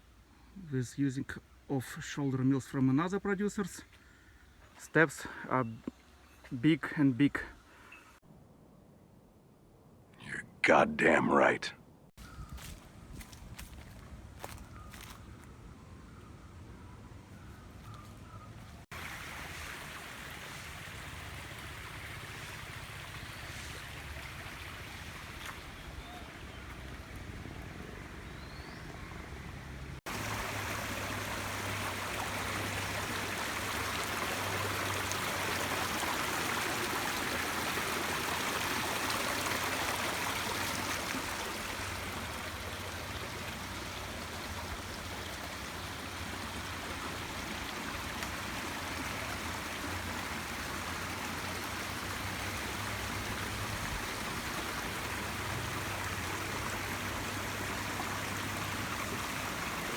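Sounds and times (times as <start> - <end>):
stream water rushing: 18.7 - 59.9.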